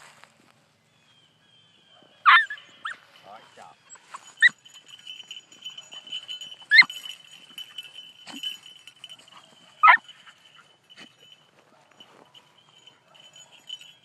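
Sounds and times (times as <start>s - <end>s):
puppy yelping: 2.0s - 3.0s, 6.7s - 7.0s, 9.8s - 10.1s.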